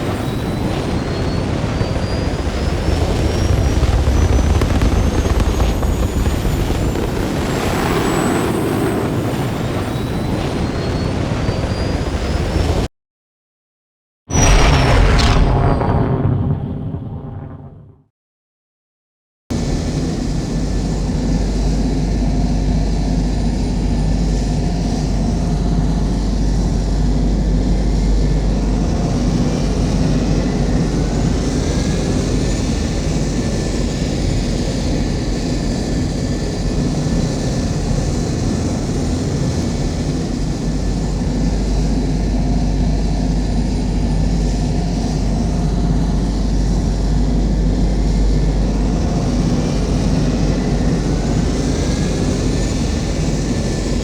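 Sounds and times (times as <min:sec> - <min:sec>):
deep engine rumble: 0:14.3 - 0:18.0.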